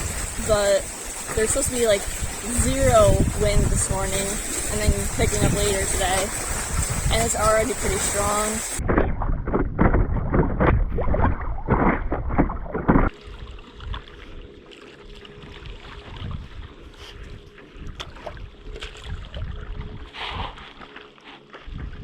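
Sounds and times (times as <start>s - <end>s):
faint steady hum: 0.0s - 8.8s
wind buffeting microphone: 0.0s - 14.5s, 15.4s - 20.8s, 21.6s - 22.0s.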